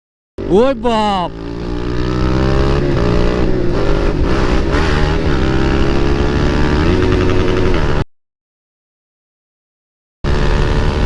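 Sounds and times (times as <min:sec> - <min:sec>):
motorcycle engine running: 0:00.4 - 0:08.0, 0:10.3 - 0:11.0.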